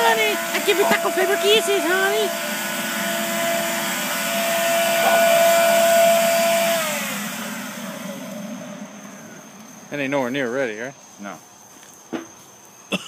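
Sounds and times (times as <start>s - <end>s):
electric blower motor whine: 0.0s - 10.4s.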